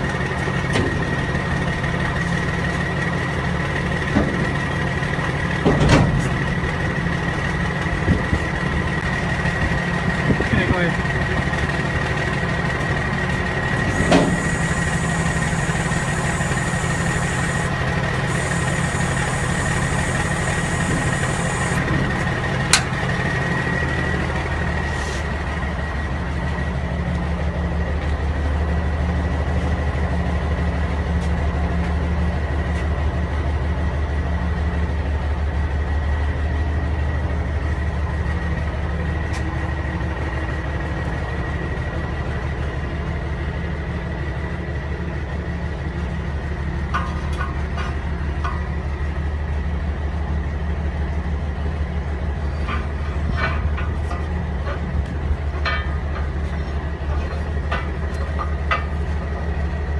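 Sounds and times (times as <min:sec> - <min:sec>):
truck engine idling: 0:00.0 - 0:59.9
thin high whine: 0:13.8 - 0:21.9.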